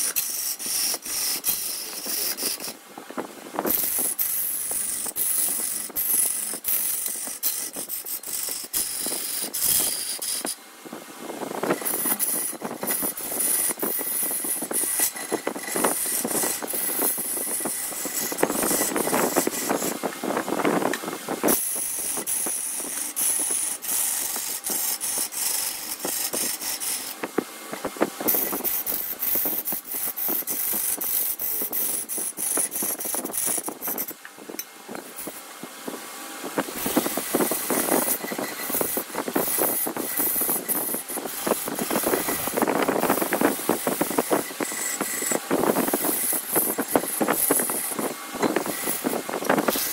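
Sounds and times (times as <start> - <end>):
chisel scraping spinning wood: 0.0 - 49.9.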